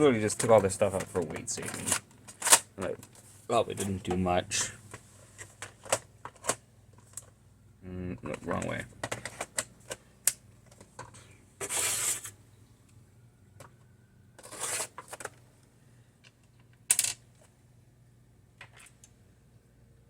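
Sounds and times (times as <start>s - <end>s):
short sliding scrapes: 11.6s - 12.4s, 14.4s - 15.0s.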